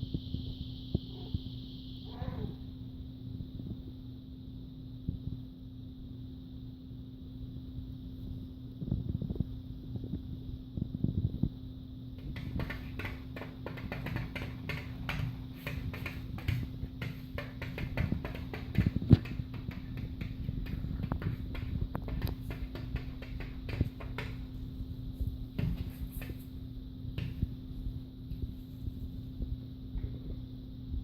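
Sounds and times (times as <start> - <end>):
steady low hum: 0.0 - 31.0
rapid clicks and taps: 12.2 - 26.5, 27.2 - 27.5.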